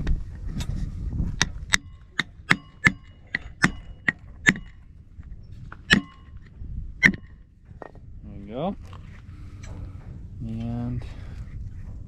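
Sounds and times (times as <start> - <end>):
hammer striking wood on bone: 1.4 - 4.8, 5.9 - 6.4, 7.0 - 7.4
metallic ring: 1.7 - 7.6.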